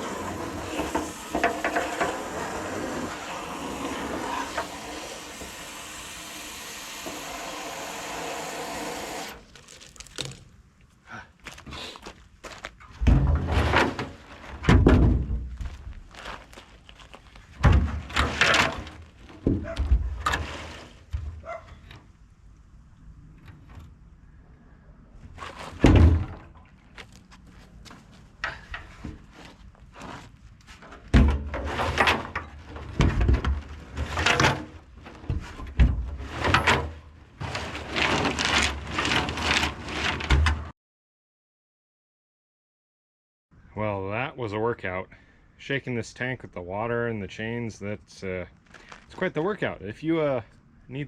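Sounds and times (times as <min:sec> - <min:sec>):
heavy thunks: 0:13.0 - 0:15.9
water sloshing in a tank: 0:25.4 - 0:27.0.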